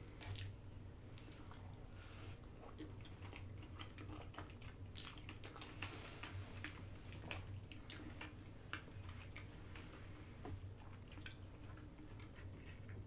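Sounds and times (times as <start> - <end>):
person chewing food: 2.4 - 13.0.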